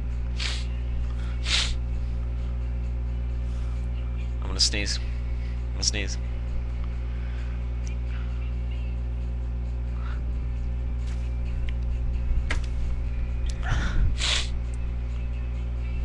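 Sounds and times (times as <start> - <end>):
electrical mains hum: 0.0 - 16.0
person's sharp in-breath: 0.4 - 1.8.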